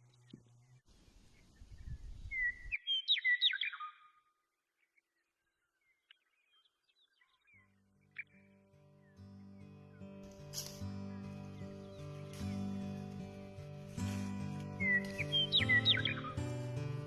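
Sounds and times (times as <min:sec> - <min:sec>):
bird chirping: 0:00.0 - 0:13.1, 0:14.8 - 0:16.5.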